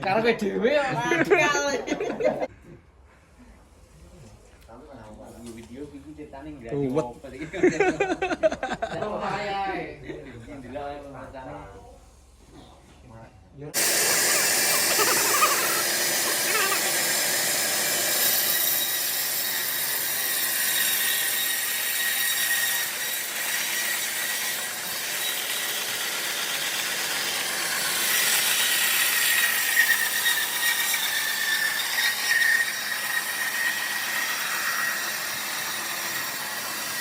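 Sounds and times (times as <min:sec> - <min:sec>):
band saw cutting log: 0:13.8 - 0:37.0.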